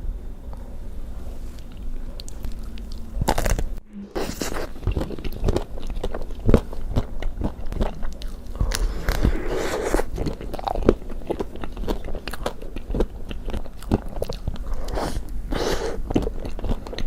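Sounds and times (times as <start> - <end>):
biting and chewing: 1.6 - 17.0.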